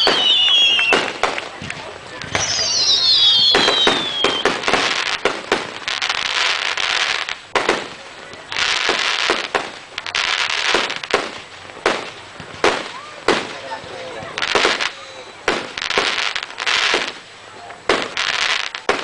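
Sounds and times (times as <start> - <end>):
falling whistle: 0.0 - 1.1, 2.4 - 4.5
fireworks bangs: 0.0 - 19.0
fireworks crackling: 0.0 - 19.0.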